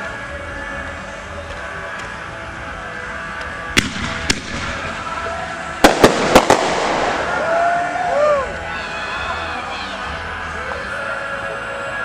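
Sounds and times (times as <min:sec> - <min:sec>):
fireworks bangs: 0:03.8 - 0:05.2, 0:05.8 - 0:07.6.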